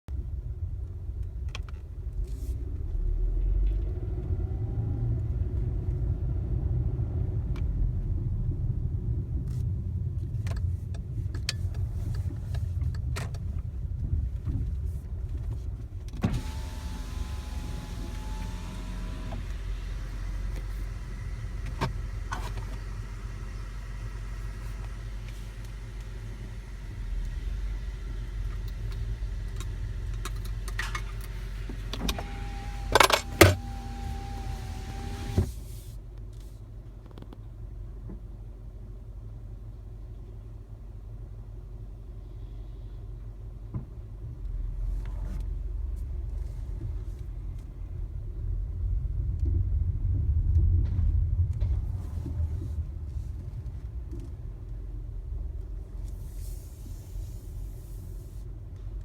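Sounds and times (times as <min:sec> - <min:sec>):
car rumbling while moving: 0:00.0 - 0:59.0.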